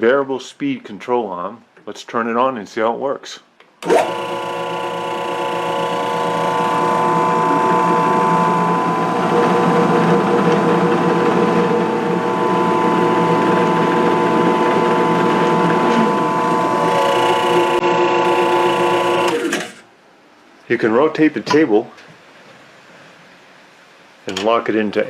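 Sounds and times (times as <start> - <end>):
drill press motor running: 3.8 - 19.8.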